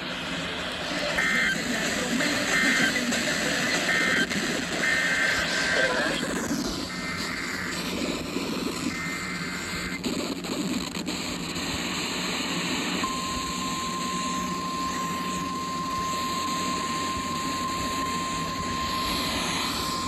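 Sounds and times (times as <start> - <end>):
radio static hiss: 0.0 - 20.0
steady warning alarm tone: 13.0 - 20.0
two-tone digital warble: 13.0 - 20.0.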